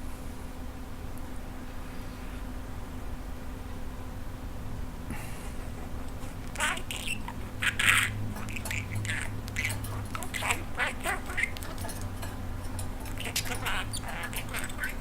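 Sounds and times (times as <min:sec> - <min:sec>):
steady low hum: 0:00.0 - 0:15.0
budgerigar chattering: 0:06.2 - 0:15.0.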